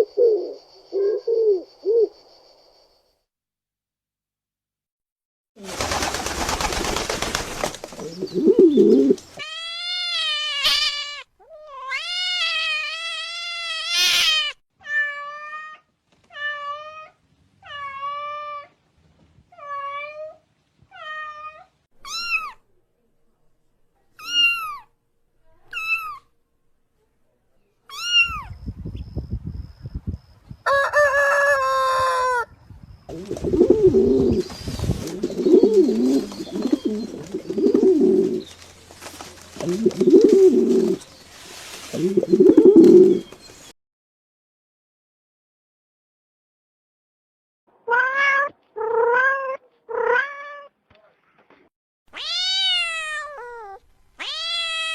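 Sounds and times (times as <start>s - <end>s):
cat meowing: 9.4s - 18.7s, 19.5s - 22.6s, 24.2s - 24.9s, 25.7s - 26.3s, 27.9s - 28.5s, 47.8s - 50.8s, 52.1s - 54.9s.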